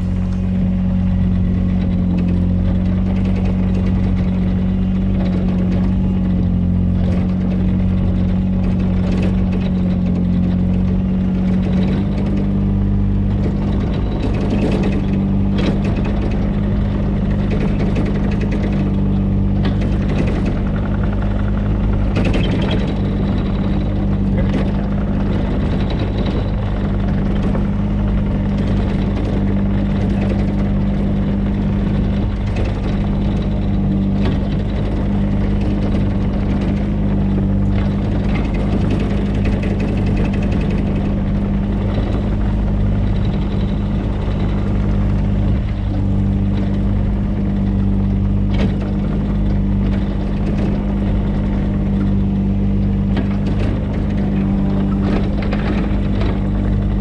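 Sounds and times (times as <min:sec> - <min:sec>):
excavator engine running: 0:00.0 - 0:57.0.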